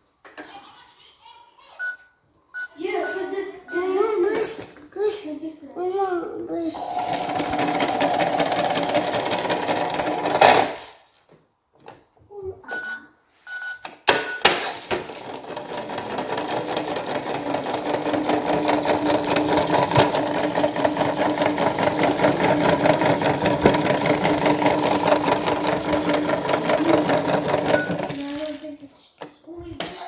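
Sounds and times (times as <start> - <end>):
toy motor running with rattle: 6.8 - 9.8, 14.7 - 28.8.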